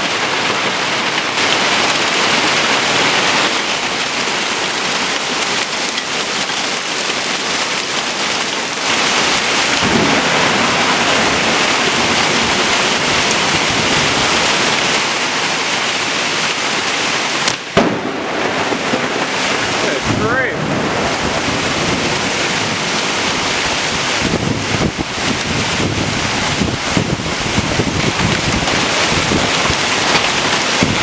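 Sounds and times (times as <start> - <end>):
heavy rain pouring: 0.0 - 31.0.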